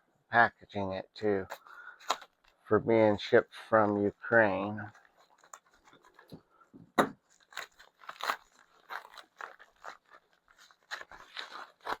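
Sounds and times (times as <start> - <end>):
packaging crinkling: 1.2 - 6.6, 7.2 - 12.0.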